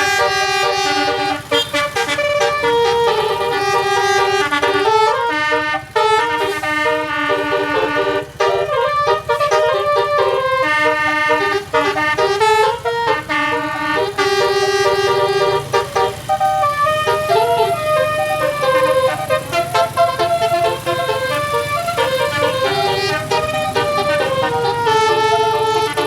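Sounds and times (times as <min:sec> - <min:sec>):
bus engine rumble: 0:00.0 - 0:26.0
bus musical horn playing tune: 0:00.0 - 0:26.0.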